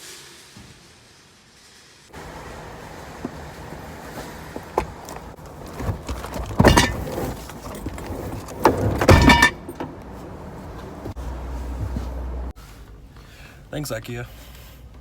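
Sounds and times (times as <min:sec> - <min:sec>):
heavy boxes knocking and scraping: 0:02.4 - 0:12.5.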